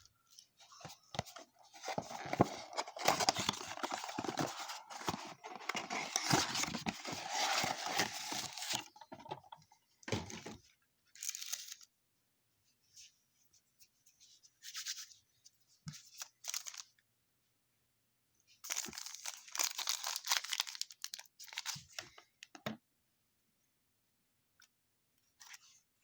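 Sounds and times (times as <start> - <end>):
plastic wrapping crinkling: 1.3 - 9.2.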